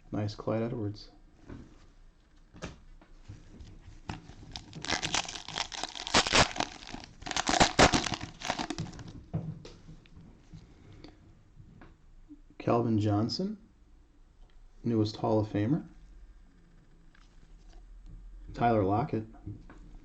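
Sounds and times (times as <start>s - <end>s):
cellophane wrapper crinkling: 4.0s - 9.1s.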